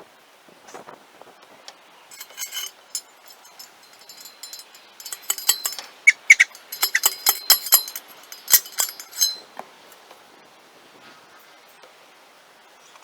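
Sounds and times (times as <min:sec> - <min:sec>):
sharp clinks and rattles: 0:02.1 - 0:09.5.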